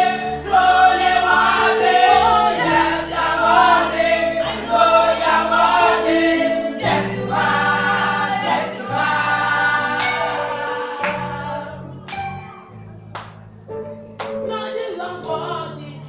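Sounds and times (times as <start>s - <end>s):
choir singing gospel: 0.0s - 12.4s
band playing: 0.0s - 13.1s.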